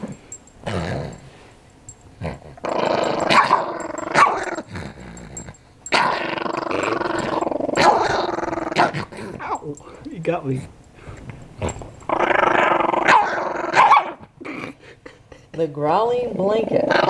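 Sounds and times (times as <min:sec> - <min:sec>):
small dog growling: 0:00.0 - 0:01.4, 0:02.2 - 0:09.6, 0:11.6 - 0:14.8
dog snarling: 0:02.2 - 0:09.6, 0:11.6 - 0:14.8.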